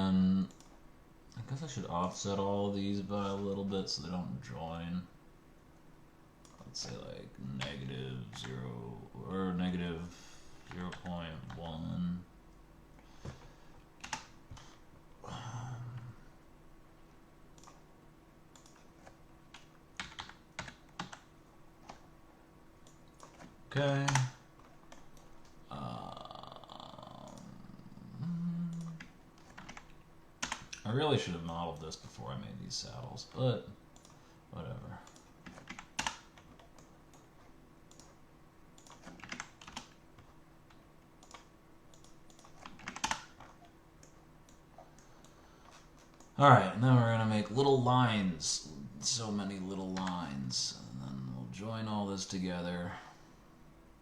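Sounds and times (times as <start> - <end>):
faint steady hum: 0.0 - 54.0
computer keyboard keys tapped: 14.0 - 14.8, 18.6 - 22.1, 22.9 - 25.6, 28.8 - 30.8, 35.1 - 38.2, 38.8 - 46.4.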